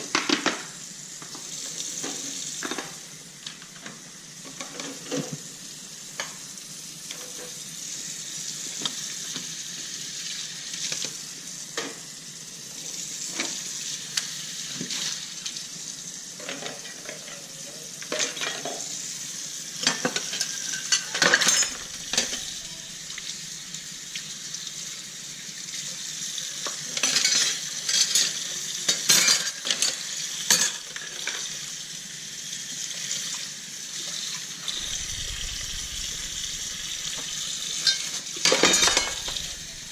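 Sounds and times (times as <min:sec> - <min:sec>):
running water hiss: 0:00.0 - 0:39.9
dishes clinking and clattering: 0:18.1 - 0:18.9, 0:19.8 - 0:23.1, 0:26.6 - 0:31.5, 0:34.7 - 0:39.9.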